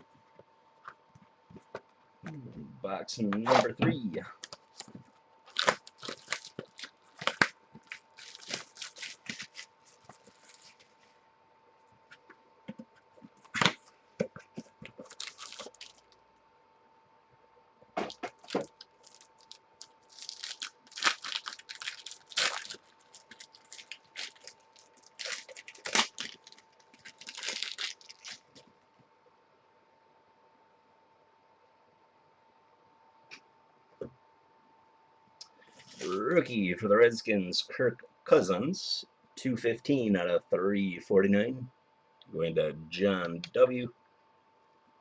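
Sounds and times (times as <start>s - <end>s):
plastic wrap tearing and crinkling: 5.5s - 11.0s, 15.0s - 16.2s, 18.0s - 28.7s, 35.8s - 36.3s.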